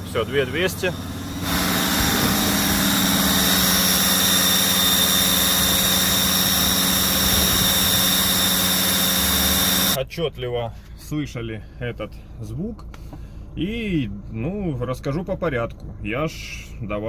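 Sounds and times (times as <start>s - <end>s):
diesel engine running: 0.0s - 10.0s
high-pitched engine whistle: 0.7s - 10.0s.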